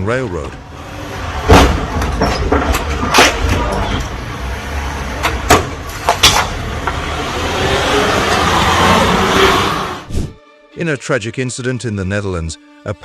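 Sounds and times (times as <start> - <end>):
low vehicle rumble: 0.4 - 10.4
sharp knocks and clunks: 1.4 - 4.1, 5.2 - 7.0.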